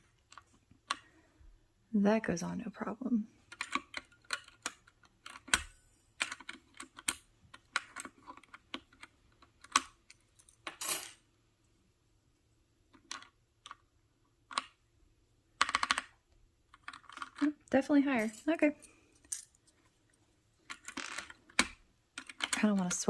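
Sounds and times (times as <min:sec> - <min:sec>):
plastic keycaps clicking: 0:03.5 - 0:10.0, 0:20.7 - 0:22.6.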